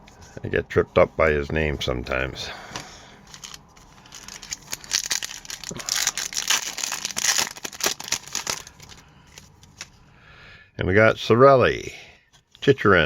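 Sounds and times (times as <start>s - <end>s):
plastic wrapper crinkling and tearing: 3.3s - 10.0s.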